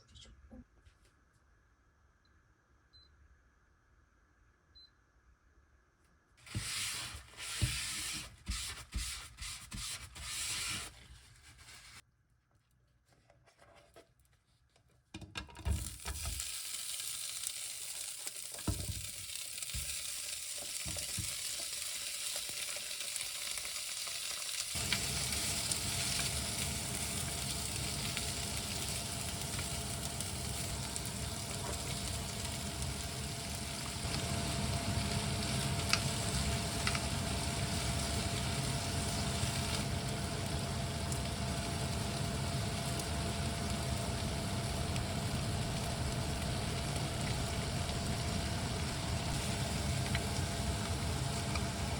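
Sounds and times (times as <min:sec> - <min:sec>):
food sizzling in a pan: 0:15.7 - 0:51.9
low hum with faint whine: 0:24.8 - 0:51.9.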